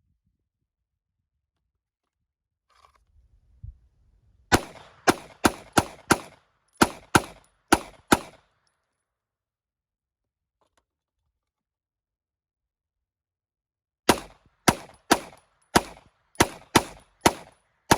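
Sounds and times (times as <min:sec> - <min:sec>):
gunshots with echo: 0:04.5 - 0:08.4, 0:14.1 - 0:17.9.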